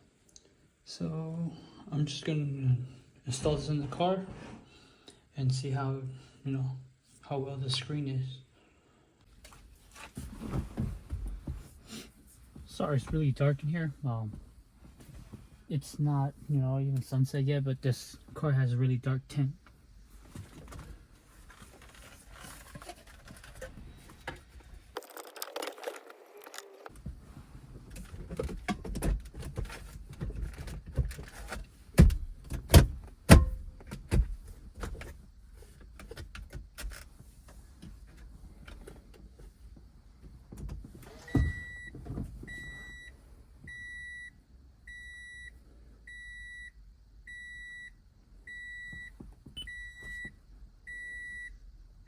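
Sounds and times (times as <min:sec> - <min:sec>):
clicks and rattles of dash trim: 0:27.8 - 0:39.4
car warning chime beeping: 0:41.2 - 0:41.9, 0:42.5 - 0:43.1, 0:43.7 - 0:45.5, 0:46.1 - 0:51.6.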